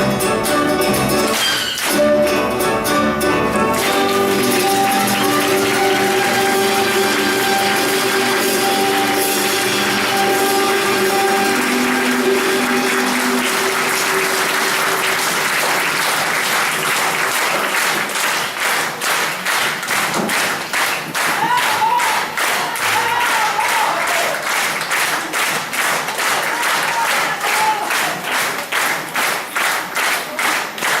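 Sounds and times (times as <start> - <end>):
string music: 0.0 - 16.4
rhythmic clapping in unison: 0.0 - 31.0
audience applause: 3.7 - 31.0.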